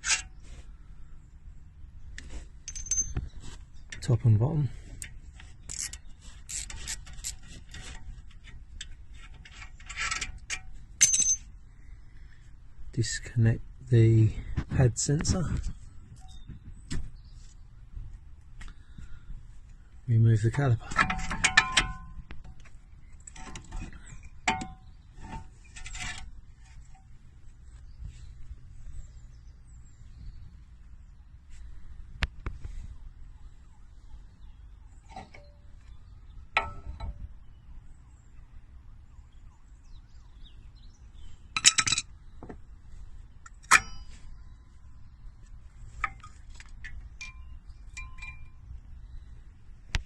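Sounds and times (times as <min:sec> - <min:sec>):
ratchet rasping metal on metal: 0:00.0 - 0:00.3, 0:05.6 - 0:08.0
metal rattling and scraping: 0:00.0 - 0:00.6, 0:02.2 - 0:11.6, 0:20.4 - 0:27.5, 0:41.5 - 0:42.1
metal clinking: 0:02.6 - 0:03.4, 0:09.9 - 0:11.5, 0:41.6 - 0:42.1, 0:43.6 - 0:44.3.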